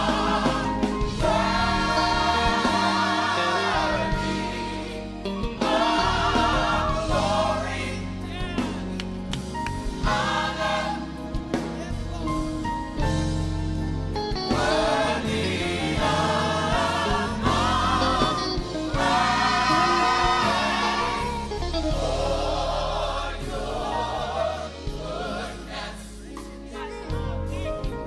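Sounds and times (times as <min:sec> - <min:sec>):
bass and instrumental backing: 0:00.0 - 0:28.0
gospel choir singing: 0:00.0 - 0:28.0.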